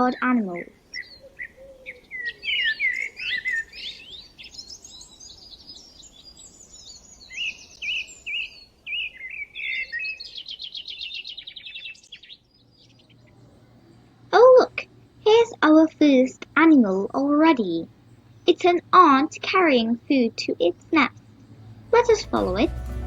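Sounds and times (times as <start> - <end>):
birds chirping and singing: 0.0 - 14.0.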